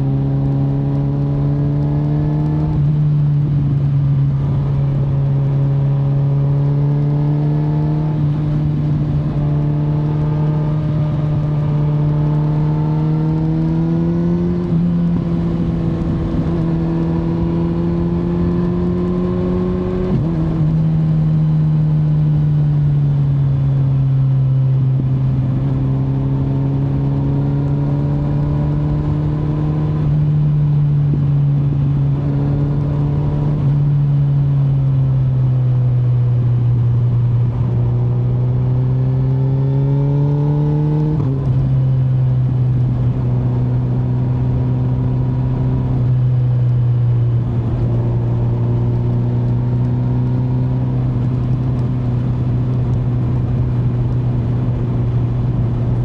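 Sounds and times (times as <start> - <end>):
motorcycle engine accelerating: 0.0 - 56.0
wind rush: 7.9 - 20.7.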